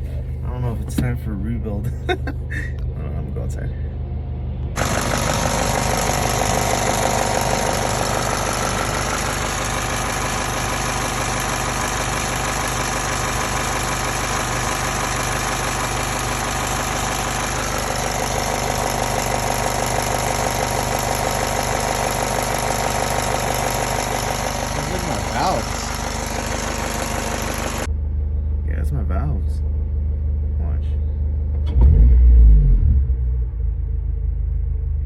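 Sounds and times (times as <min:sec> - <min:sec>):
car engine idling: 0:00.0 - 0:31.8.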